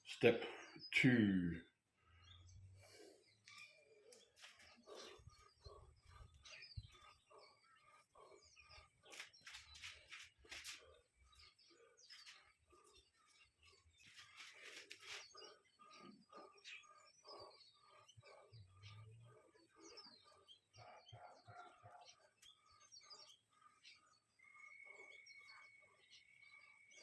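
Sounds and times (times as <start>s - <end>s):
faint bird chirps: 0.0s - 27.0s
rustles: 9.1s - 10.9s, 14.0s - 15.4s.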